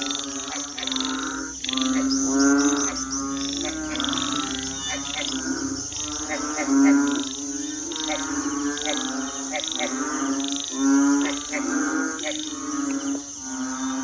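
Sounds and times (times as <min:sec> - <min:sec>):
crickets trilling: 0:00.0 - 0:14.0
frogs and toads calling: 0:00.0 - 0:14.0.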